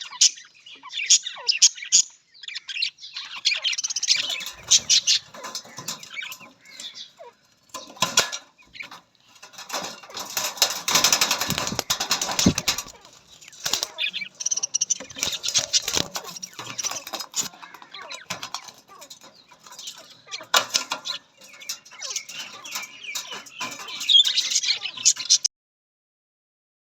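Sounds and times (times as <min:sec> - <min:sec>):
budgerigars chirping: 0:00.0 - 0:25.5
wing flapping: 0:04.1 - 0:25.4.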